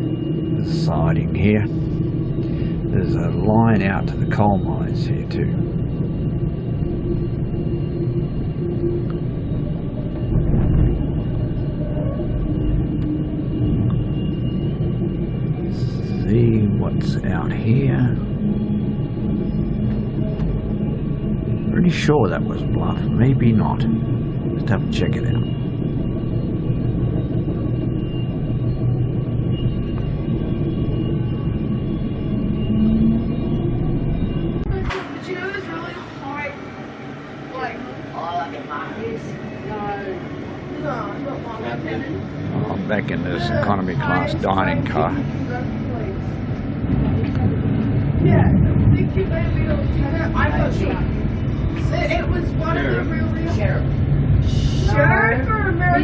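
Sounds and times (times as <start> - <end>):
faint steady hums: 0.0 - 56.0
faint steady tones: 0.0 - 56.0
train rumbling inside carriage: 40.7 - 56.0.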